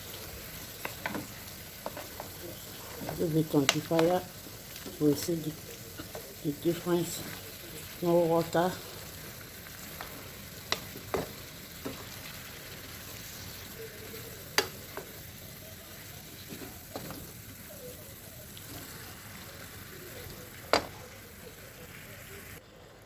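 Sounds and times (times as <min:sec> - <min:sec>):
food sizzling in oil: 0:00.0 - 0:23.0
stirring knocks in a pot: 0:00.8 - 0:05.3, 0:09.6 - 0:12.5, 0:14.5 - 0:15.2, 0:16.3 - 0:17.4, 0:20.7 - 0:21.1.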